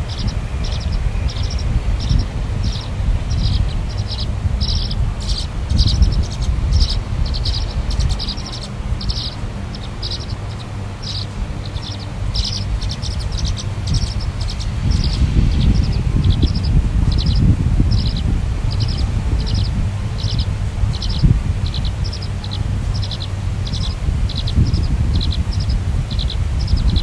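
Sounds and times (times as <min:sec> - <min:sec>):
bird chattering calls: 0:00.0 - 0:27.0
steady low rumble: 0:00.0 - 0:27.0.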